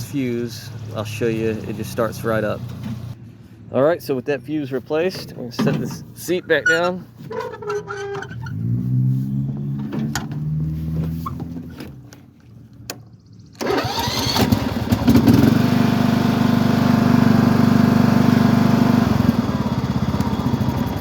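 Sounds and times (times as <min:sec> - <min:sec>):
mower engine starting and running: 0:00.0 - 0:03.2, 0:13.5 - 0:21.0.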